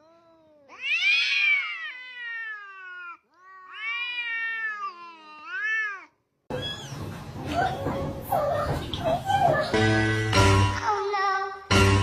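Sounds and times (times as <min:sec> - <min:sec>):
cat meowing: 0:00.1 - 0:06.7.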